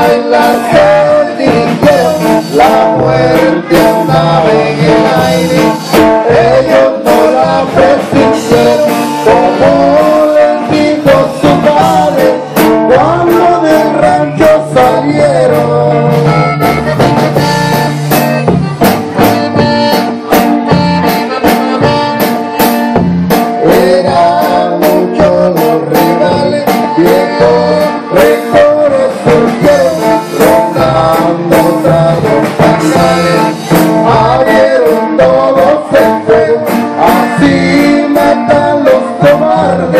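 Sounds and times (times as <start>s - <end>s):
accordion melody: 0.0s - 39.9s
steady driving beat: 0.0s - 39.9s.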